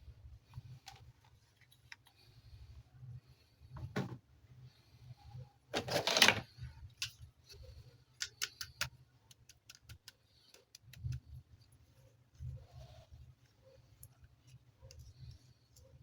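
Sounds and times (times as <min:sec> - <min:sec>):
plastic rustling scrape: 0:05.8 - 0:06.5.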